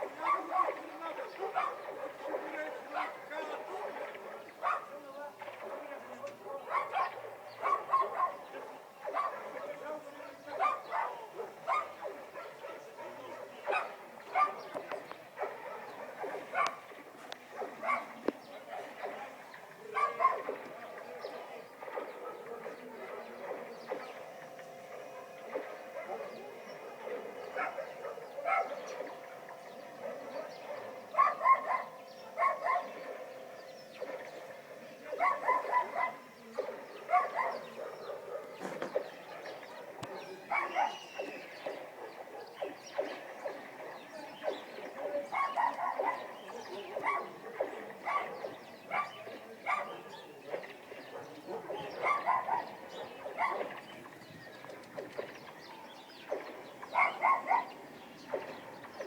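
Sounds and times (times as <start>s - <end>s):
dogs barking: 0.0s - 59.0s.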